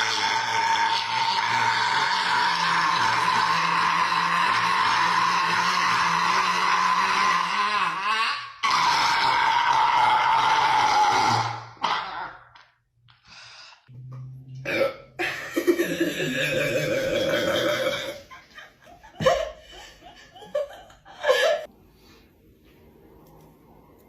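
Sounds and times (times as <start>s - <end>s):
person burping: 0.0s - 12.6s, 14.6s - 18.3s.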